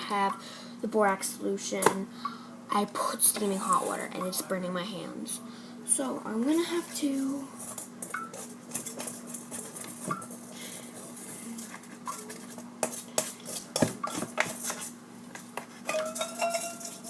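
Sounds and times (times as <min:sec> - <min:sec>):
faint steady hum: 0:00.0 - 0:17.0
spoon scraping: 0:06.6 - 0:17.0
spoon clinking in a bowl: 0:15.9 - 0:17.0.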